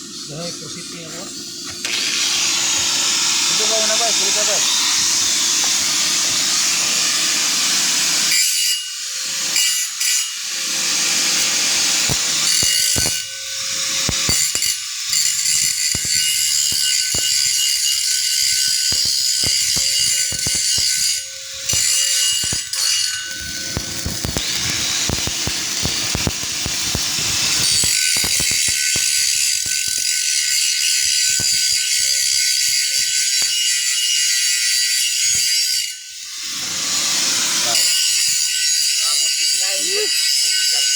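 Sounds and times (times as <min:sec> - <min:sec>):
welding arc crackling: 0:09.4 - 0:33.2.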